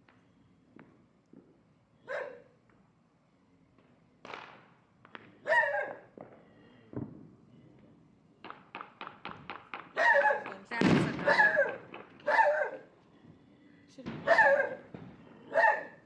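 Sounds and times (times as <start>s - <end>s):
dog barking: 2.0s - 2.6s, 5.4s - 6.1s, 10.0s - 10.6s, 11.2s - 12.9s, 14.2s - 16.0s
rapid sharp cracks: 4.2s - 5.3s, 8.4s - 12.3s.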